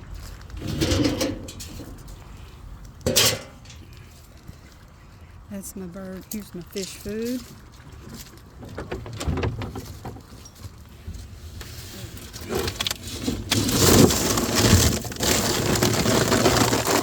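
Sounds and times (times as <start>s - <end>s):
fish food rattling in container: 12.2s - 17.0s.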